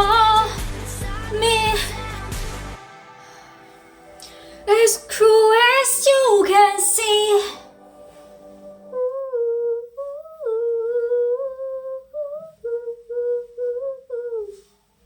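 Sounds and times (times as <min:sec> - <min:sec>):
woman humming a melody: 0:08.8 - 0:14.7.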